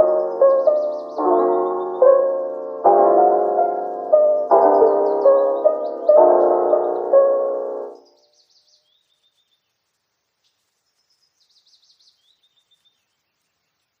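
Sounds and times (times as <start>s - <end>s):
piano music: 0.0s - 8.1s
songbird singing: 0.0s - 14.0s.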